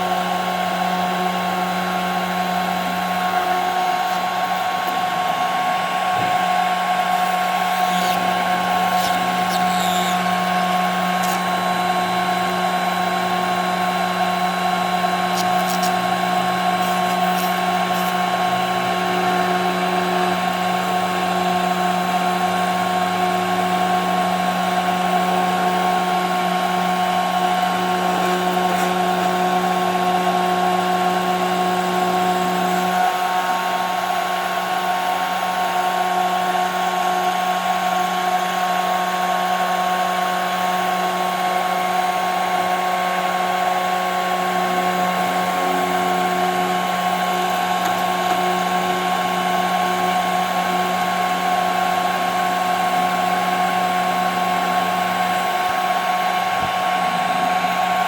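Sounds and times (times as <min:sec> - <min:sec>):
router spindle high whine: 0:00.0 - 0:58.0.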